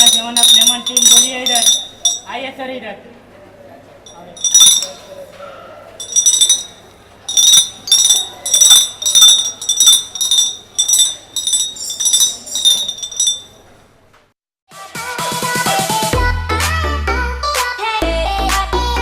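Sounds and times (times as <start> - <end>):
spoon clinking on glass bottles: 0.0 - 2.3, 4.1 - 5.2, 6.0 - 13.5.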